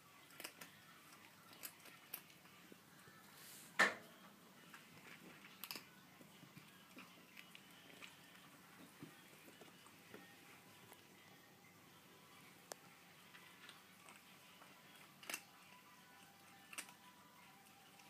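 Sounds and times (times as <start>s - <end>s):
kitten crunching dry food: 0.1s - 2.8s, 4.6s - 11.4s, 12.2s - 18.0s.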